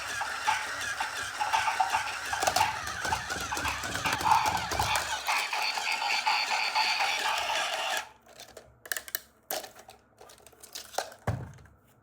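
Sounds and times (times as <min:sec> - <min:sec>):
electronic toy sound: 0:00.0 - 0:08.1.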